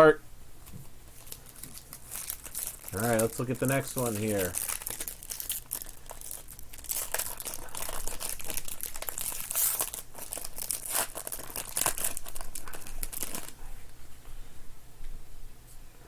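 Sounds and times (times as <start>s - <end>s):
plastic wrapper tearing and crinkling: 1.2s - 13.6s.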